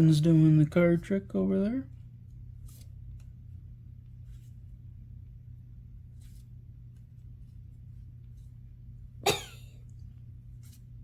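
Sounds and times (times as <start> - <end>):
steady low hum: 0.0 - 11.0
soft rustles: 6.0 - 8.7, 10.2 - 11.0
person coughing: 9.2 - 9.9.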